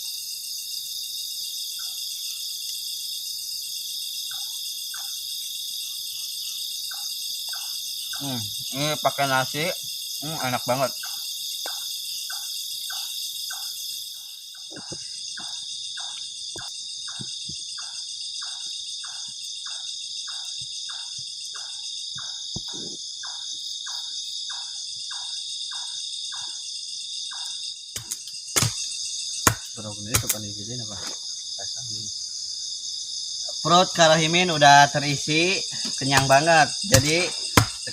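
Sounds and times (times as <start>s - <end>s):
crickets trilling: 0.0s - 37.9s
pulsing insect call: 0.0s - 37.9s
sharp knocks and clatter: 28.0s - 31.2s.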